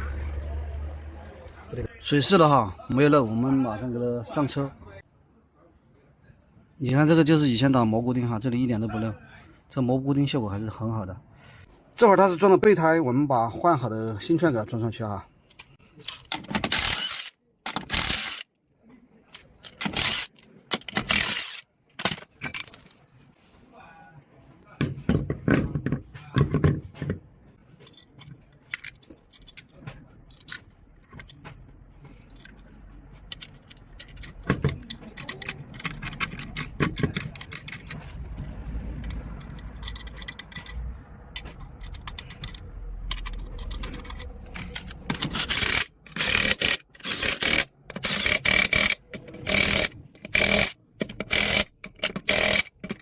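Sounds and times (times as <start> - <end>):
metal clinking and scraping: 27.7 - 53.0.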